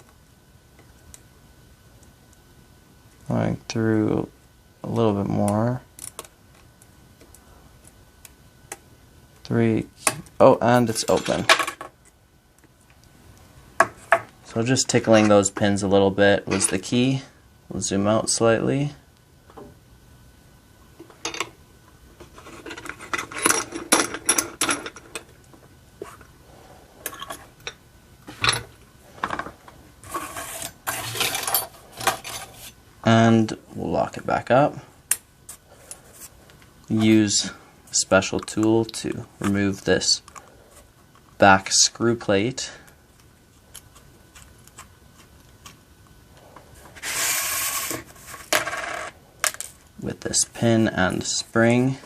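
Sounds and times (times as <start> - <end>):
metal scrape: 30.0 - 32.8, 46.9 - 49.0.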